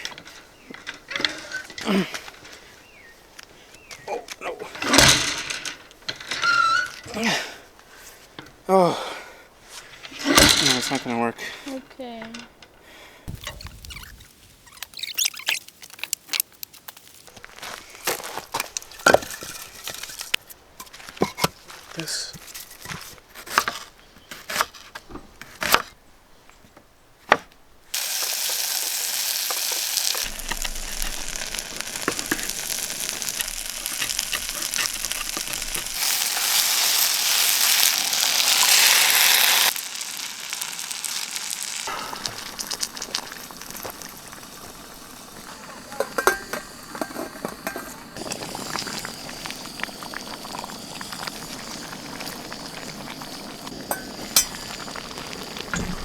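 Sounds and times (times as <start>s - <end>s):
food sizzling in a hot pan: 27.9s - 56.0s.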